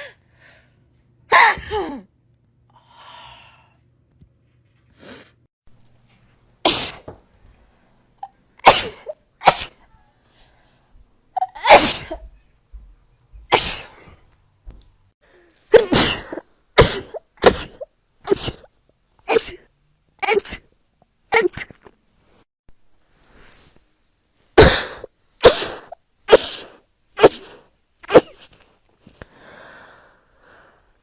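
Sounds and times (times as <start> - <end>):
person sneezing: 6.6 - 7.1, 8.6 - 9.8, 11.4 - 12.2, 13.5 - 14.2, 15.6 - 18.7, 19.3 - 20.6, 21.3 - 21.9, 24.6 - 28.6
faint breaths drawn in: 10.2 - 11.1, 28.4 - 31.0.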